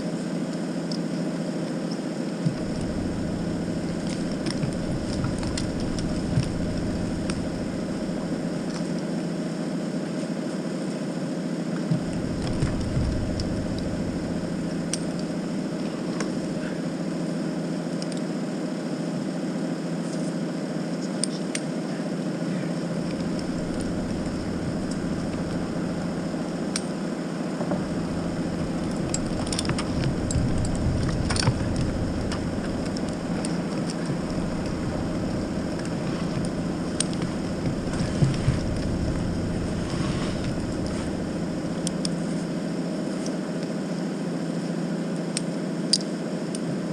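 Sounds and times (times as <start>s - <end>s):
heavy engine running: 2.3s - 21.0s, 21.8s - 45.1s
faint clicks and knocks: 2.5s - 9.0s, 11.9s - 16.4s, 23.0s - 42.4s.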